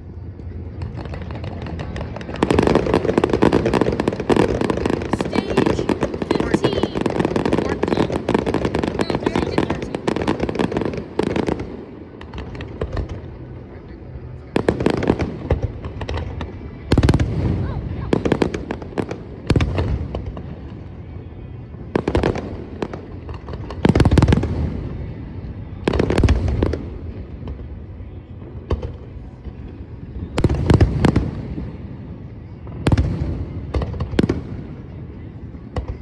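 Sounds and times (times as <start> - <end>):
echoing rumble and crackle: 0.0 - 20.8
fireworks bangs: 0.7 - 13.2.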